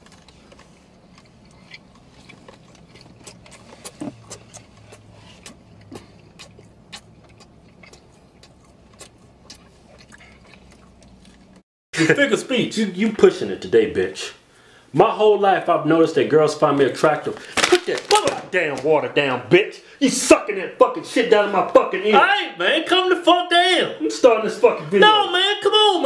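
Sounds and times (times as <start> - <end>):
wet lip smacks: 1.2 - 11.5
tongue clicks: 2.4 - 10.6.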